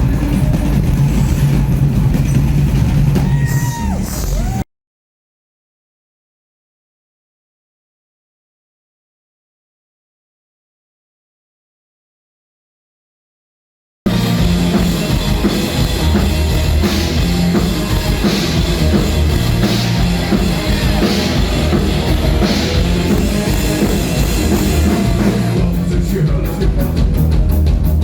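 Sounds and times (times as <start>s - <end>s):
loud industrial electronic music: 0.0s - 4.6s, 14.1s - 28.0s.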